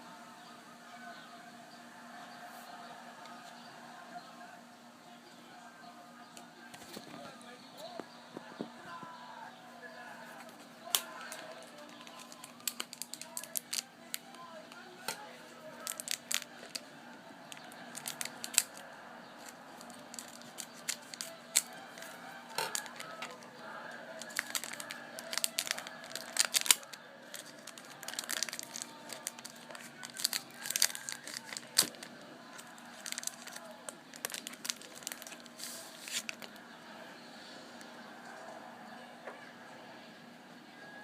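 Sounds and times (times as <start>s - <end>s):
card packs torn and wrappers crinkled: 10.4s - 16.8s, 17.5s - 18.8s, 19.4s - 23.5s, 24.2s - 36.6s.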